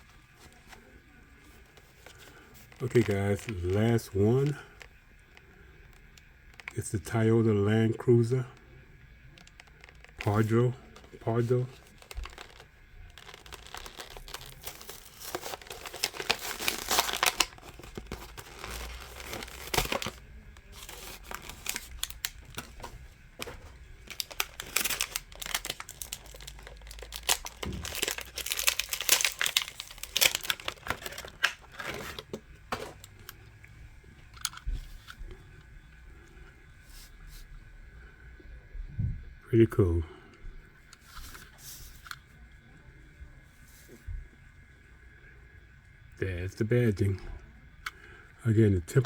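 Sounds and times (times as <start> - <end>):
packaging crinkling and tearing: 1.5 - 6.8, 9.3 - 33.4.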